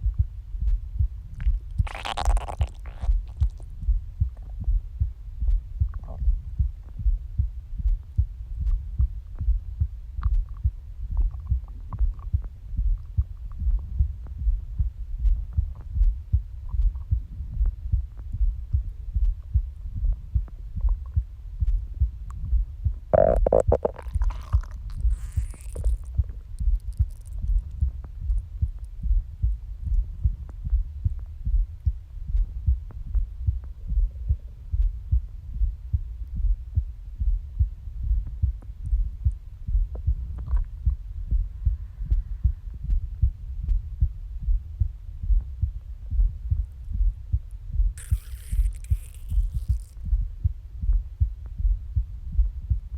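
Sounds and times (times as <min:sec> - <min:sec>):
heartbeat thumps: 0:00.0 - 0:52.9
stomach gurgles and growl: 0:01.3 - 0:04.8, 0:05.8 - 0:06.4, 0:10.2 - 0:14.0, 0:22.3 - 0:28.8, 0:39.7 - 0:42.6, 0:48.0 - 0:50.2.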